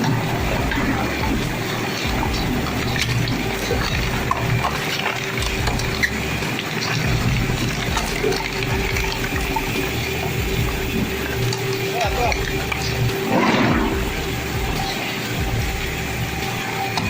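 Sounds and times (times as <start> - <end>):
machine hum: 0.0 - 17.0
shredder crunching plastic: 0.0 - 17.0.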